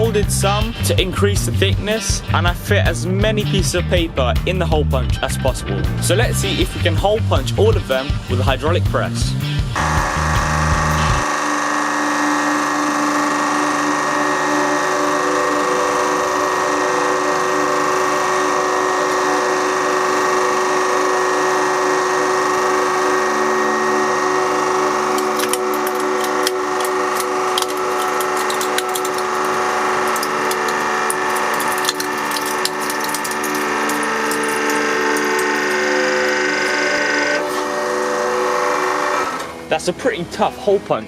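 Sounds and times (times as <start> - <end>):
hydraulic press motor and pump hum: 0.0 - 40.8
paper cracking and crunching: 25.2 - 35.2.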